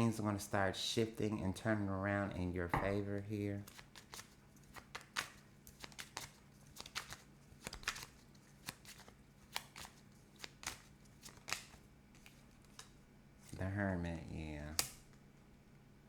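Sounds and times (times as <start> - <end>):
cards being shuffled: 2.8 - 13.0.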